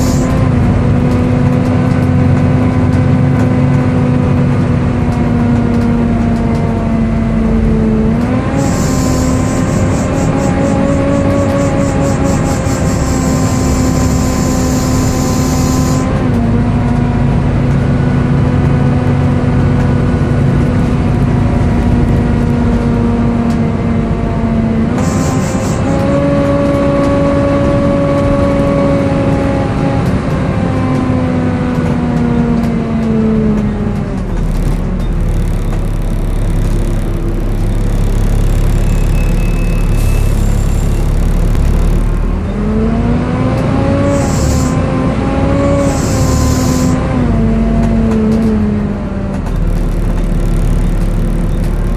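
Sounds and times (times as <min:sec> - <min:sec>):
low engine rumble: 0:00.0 - 0:43.4, 0:45.8 - 0:51.9
screechy cooling fan whine: 0:08.6 - 0:16.1, 0:45.8 - 0:47.0.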